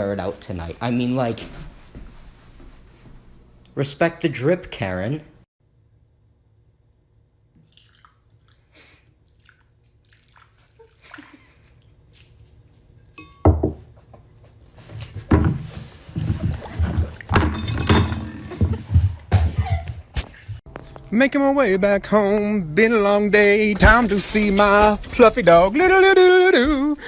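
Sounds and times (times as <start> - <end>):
loud knocking and clattering: 23.7 - 26.0.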